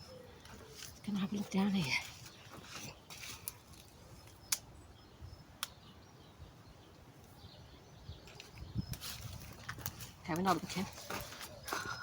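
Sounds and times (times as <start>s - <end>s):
faint bird chirps: 0.0s - 9.6s.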